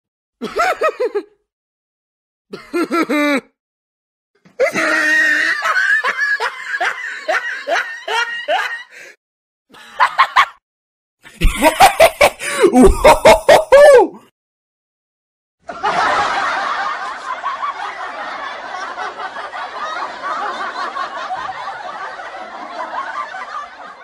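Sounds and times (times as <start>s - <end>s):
person laughing: 2.6s - 3.5s, 4.6s - 9.0s, 11.3s - 14.2s.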